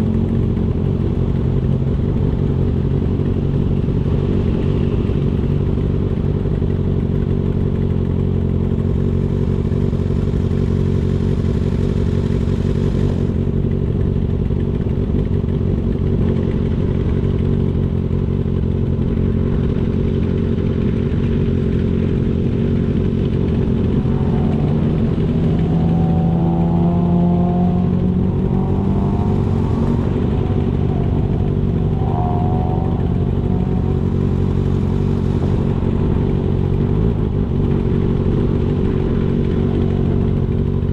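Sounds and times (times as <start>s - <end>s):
motorcycle engine running: 0.0s - 40.9s
wavering higher tone: 23.0s - 36.0s.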